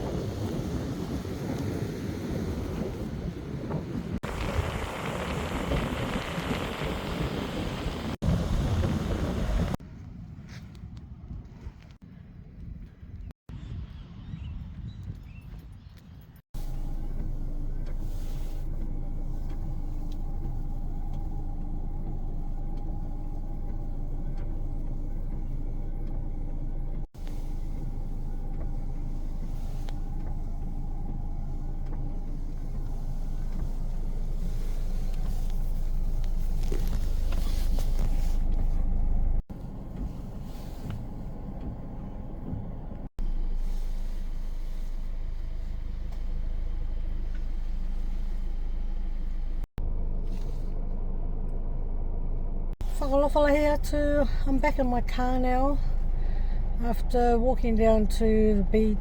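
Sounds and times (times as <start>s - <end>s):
wind buffeting microphone: 0.0s - 18.2s.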